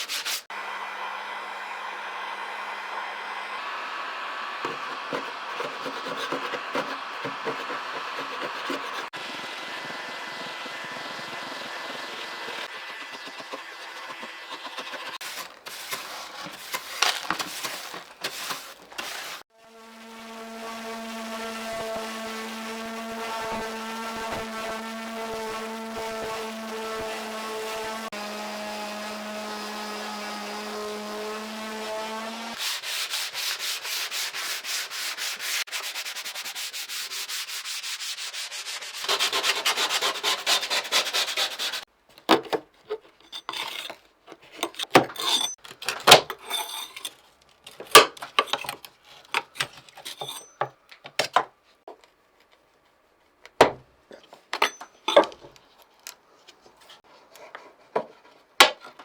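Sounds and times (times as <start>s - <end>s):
fast rubbing strokes: 0.0s - 0.5s, 4.7s - 9.1s, 12.5s - 41.9s
small electric sanding tool humming: 0.5s - 15.2s, 19.0s - 35.7s.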